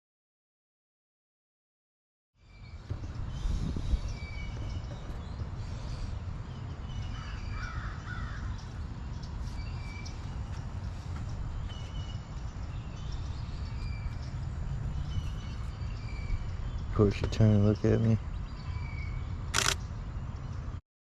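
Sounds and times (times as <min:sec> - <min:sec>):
small birds chirping: 0:02.4 - 0:20.8
steady low rumble: 0:02.6 - 0:20.7
harsh raspy bird call: 0:07.1 - 0:08.6.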